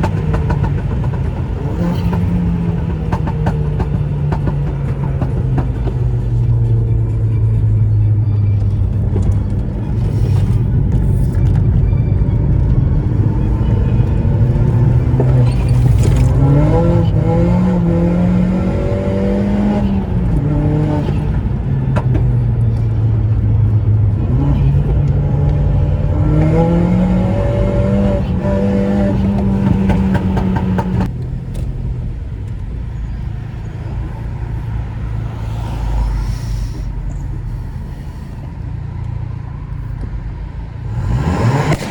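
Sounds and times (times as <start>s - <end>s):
car engine accelerating: 0.0s - 41.9s.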